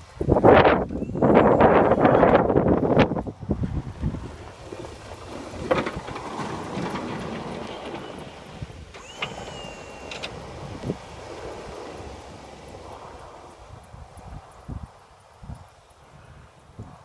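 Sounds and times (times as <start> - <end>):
wind noise: 0.0 - 17.0
snow plow knocks: 4.5 - 12.2
brief high whine: 9.0 - 10.4.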